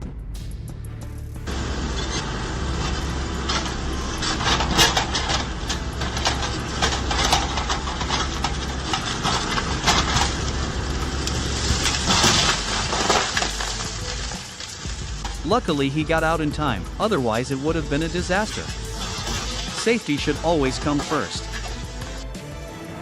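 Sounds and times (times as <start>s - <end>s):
chainsaw engine running: 1.5s - 22.2s
cracks and knocks: 3.4s - 15.5s.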